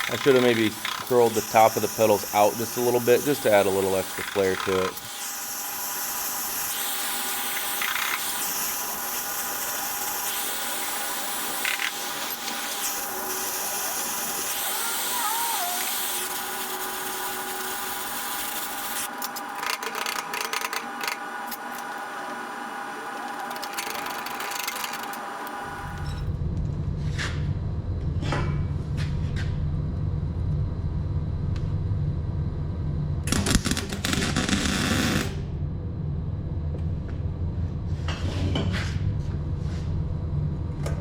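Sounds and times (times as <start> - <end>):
gas torch flame hissing: 0.2 - 19.1.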